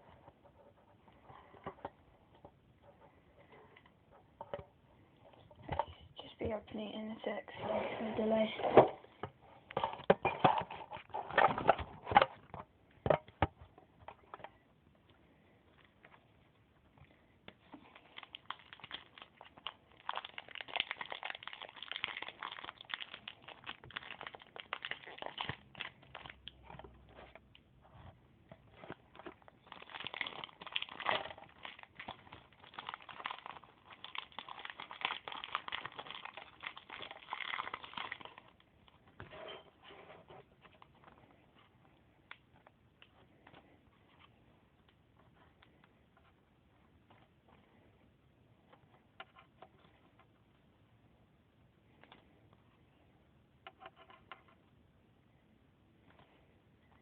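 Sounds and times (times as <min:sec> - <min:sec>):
foil wrapper crinkling: 0:17.7 - 0:26.6, 0:28.8 - 0:39.0.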